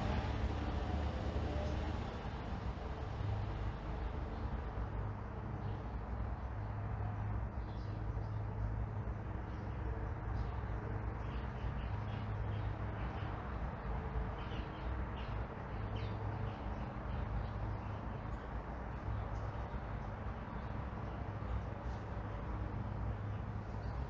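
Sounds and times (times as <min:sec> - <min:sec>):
distant road traffic rumble: 0:00.0 - 0:24.0.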